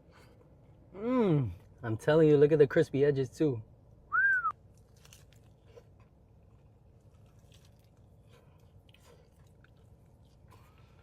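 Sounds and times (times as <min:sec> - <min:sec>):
low room hum: 0:00.0 - 0:11.0
chewing crispy food: 0:04.6 - 0:11.0
soft crunches: 0:04.7 - 0:11.0.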